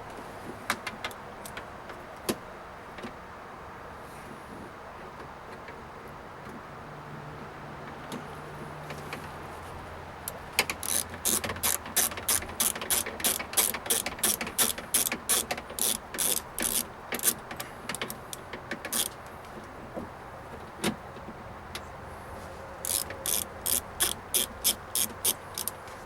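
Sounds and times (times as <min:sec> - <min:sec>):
ratchet wrench clicking: 0:10.3 - 0:18.2, 0:18.9 - 0:19.2, 0:22.8 - 0:25.8.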